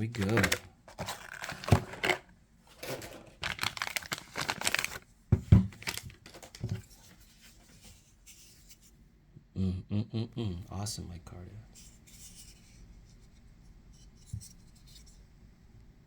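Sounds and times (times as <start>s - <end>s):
paper and plastic crinkling: 0.0s - 7.8s
faint handling noise: 0.0s - 9.0s, 11.7s - 15.9s.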